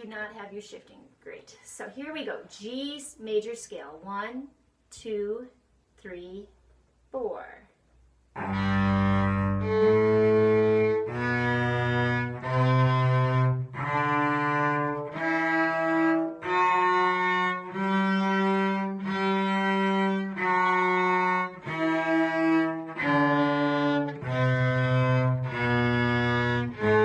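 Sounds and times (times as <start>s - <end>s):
cello playing scale: 8.4s - 27.0s
violin playing scale: 8.4s - 27.0s.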